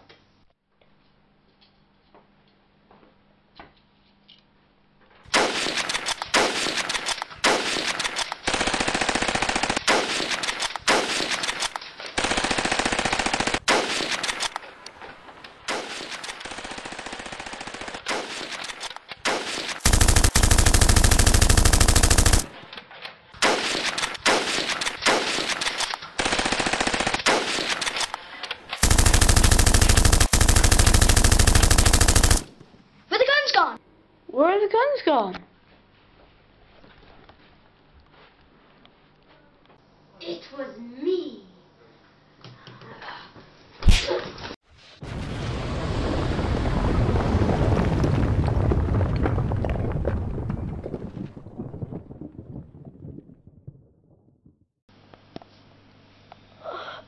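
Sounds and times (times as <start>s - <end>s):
automatic gunfire bursts: 5.3s - 14.6s, 15.7s - 22.6s, 23.4s - 28.2s, 28.8s - 32.7s.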